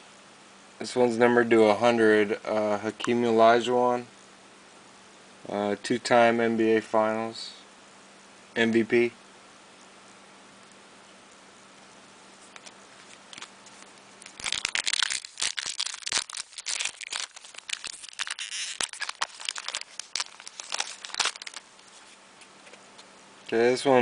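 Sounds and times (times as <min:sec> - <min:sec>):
card pack wrapper crinkling and tearing: 0:12.5 - 0:22.8.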